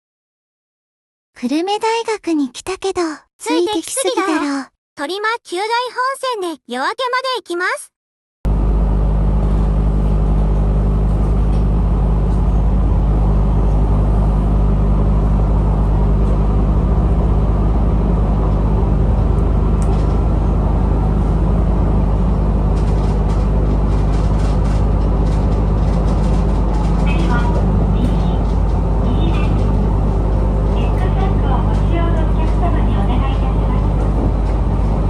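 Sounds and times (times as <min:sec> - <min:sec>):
railcar engine drone: 0:08.5 - 0:35.0.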